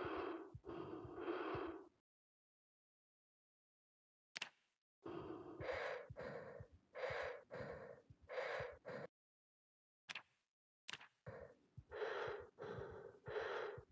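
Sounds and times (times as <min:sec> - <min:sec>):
breathing through gas mask: 0:00.0 - 0:01.9, 0:05.1 - 0:09.1, 0:11.3 - 0:13.9.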